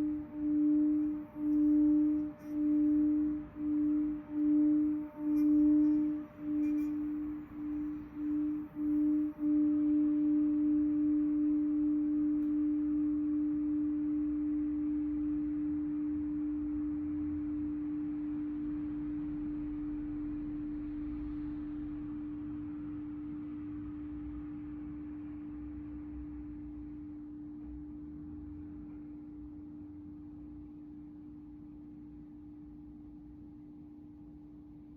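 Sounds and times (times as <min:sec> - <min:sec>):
singing bowl ringing: 0:00.0 - 0:13.6.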